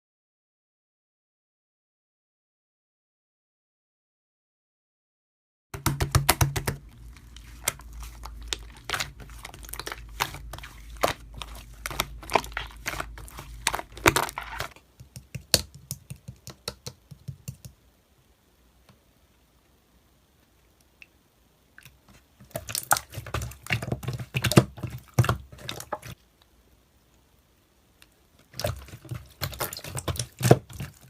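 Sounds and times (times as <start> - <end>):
slime crackling and popping: 5.8 - 14.8, 28.5 - 31.0.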